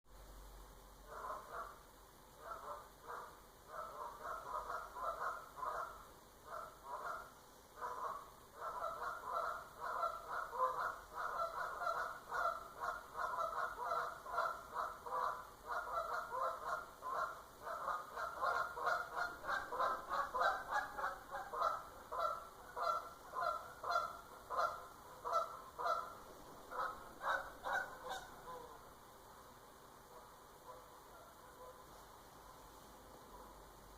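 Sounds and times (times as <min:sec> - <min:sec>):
geese honking: 0:02.4 - 0:28.8.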